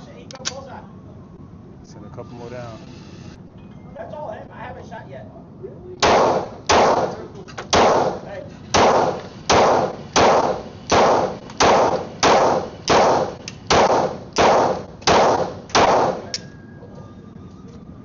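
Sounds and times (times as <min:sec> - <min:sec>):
pistol shots with echo: 0:06.0 - 0:16.5.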